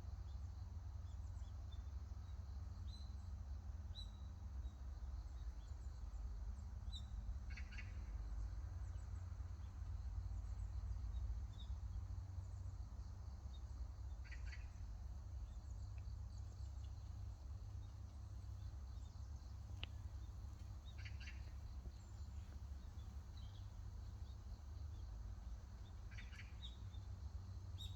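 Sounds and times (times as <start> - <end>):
birds chirping: 16.8 - 27.1.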